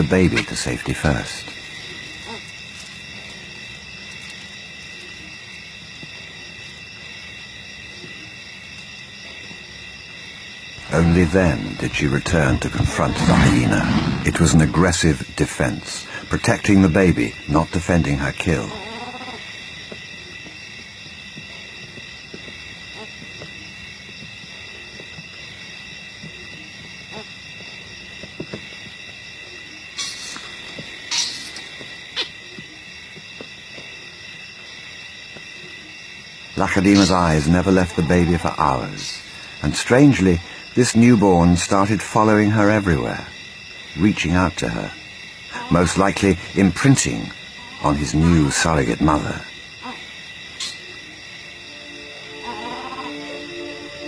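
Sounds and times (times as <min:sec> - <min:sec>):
insects shrilling: 0:00.0 - 0:20.9, 0:24.6 - 0:33.2, 0:33.8 - 0:54.0
loud sharp noises: 0:10.8 - 0:16.2
high-pitched insect chirring: 0:29.8 - 0:32.4, 0:43.3 - 0:54.0
short low animal calls: 0:52.4 - 0:53.3.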